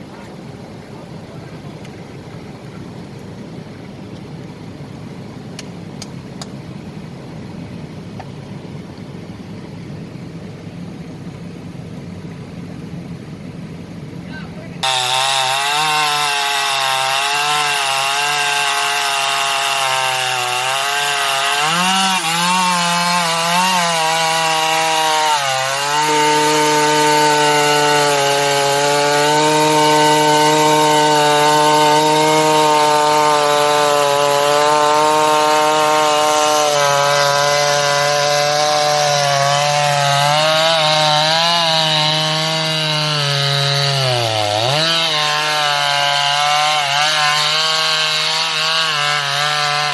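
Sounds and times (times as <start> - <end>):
chainsaw cutting log: 14.8 - 49.9.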